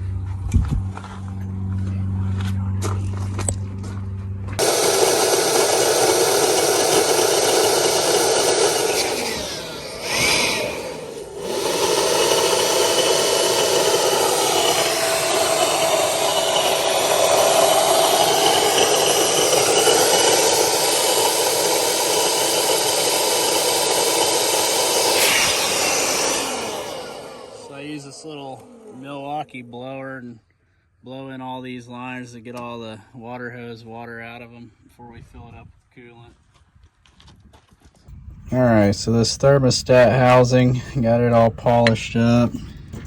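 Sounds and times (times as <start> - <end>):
motor-driven tool grinding: 4.6 - 29.2.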